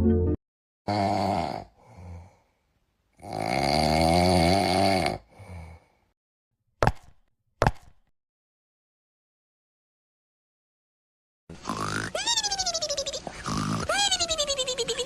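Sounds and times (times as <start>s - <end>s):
person snoring: 0.9s - 2.5s, 3.2s - 6.1s, 11.5s - 12.2s, 13.4s - 14.0s.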